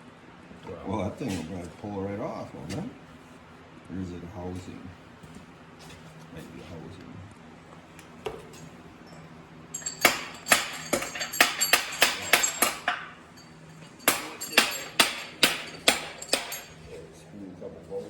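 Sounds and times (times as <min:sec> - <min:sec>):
hammer striking steel: 0:09.8 - 0:16.9.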